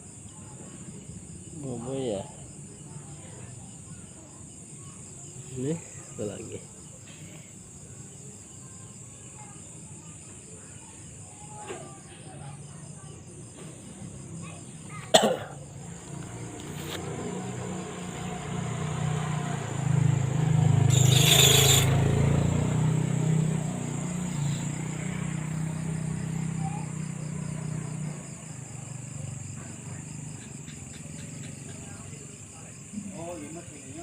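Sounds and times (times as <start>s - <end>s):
crickets and insects chirping: 0.0s - 34.0s
passing vehicle engine: 15.9s - 30.4s.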